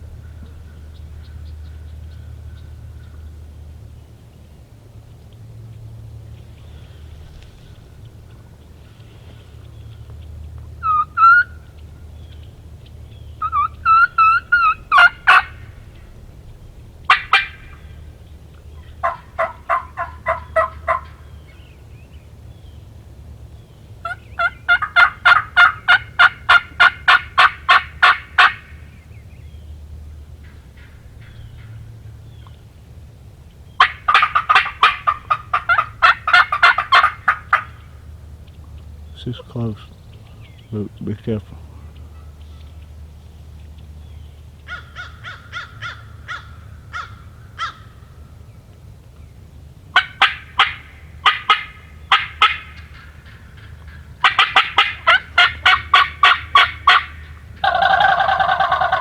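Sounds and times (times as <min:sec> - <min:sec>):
wild turkey yelping: 0:06.4 - 0:21.9, 0:24.0 - 0:29.0, 0:30.0 - 0:32.8, 0:33.7 - 0:43.3, 0:44.6 - 0:48.4, 0:49.9 - 0:59.0.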